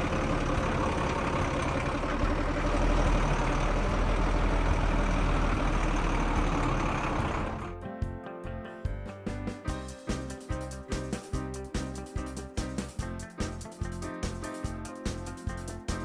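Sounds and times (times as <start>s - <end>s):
heavy diesel engine rumbling: 0.0s - 7.9s.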